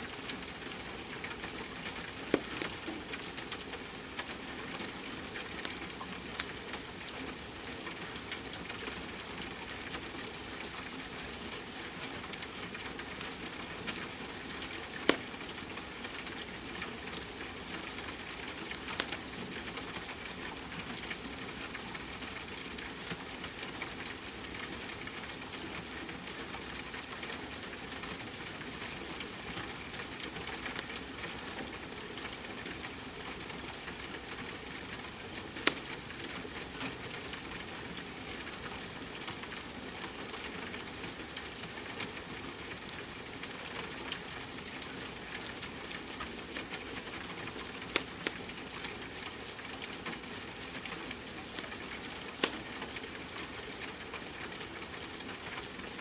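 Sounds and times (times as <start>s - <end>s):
wood fire crackling: 0.2s - 7.5s, 14.4s - 20.2s, 35.0s - 38.4s, 44.7s - 49.9s, 50.5s - 53.8s.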